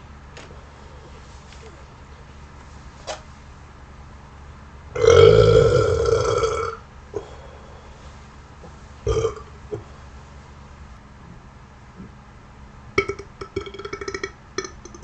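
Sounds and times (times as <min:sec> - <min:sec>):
person burping: 0:05.0 - 0:06.8, 0:09.1 - 0:09.8, 0:13.0 - 0:15.0.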